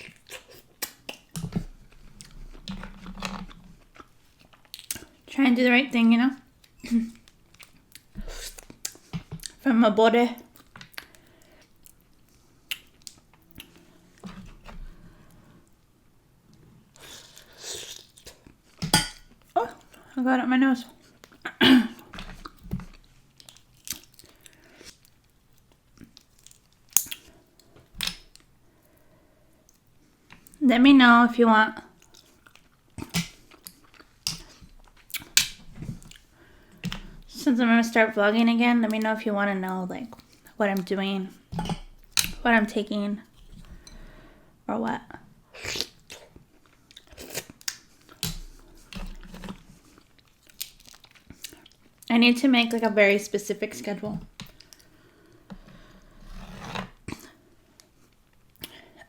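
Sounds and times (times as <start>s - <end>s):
person chewing: 0.0s - 5.2s, 6.6s - 9.6s, 10.5s - 14.2s, 21.0s - 30.6s, 32.0s - 37.2s, 45.6s - 52.1s
mouth clicks and smacks: 12.7s - 13.7s.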